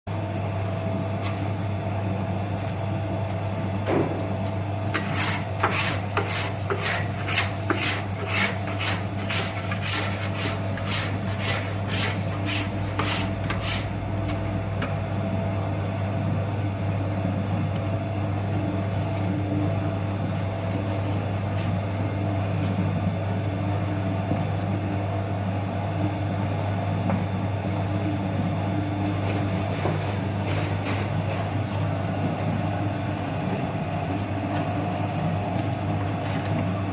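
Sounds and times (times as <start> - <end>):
low machine hum: 0.1 - 36.9
rubbing or scraping strokes: 5.0 - 13.9.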